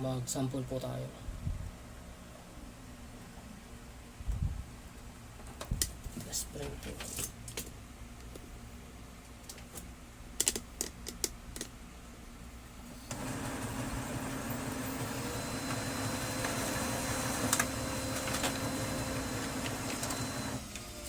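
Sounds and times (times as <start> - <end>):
laser printer motor and gears: 13.1 - 21.0.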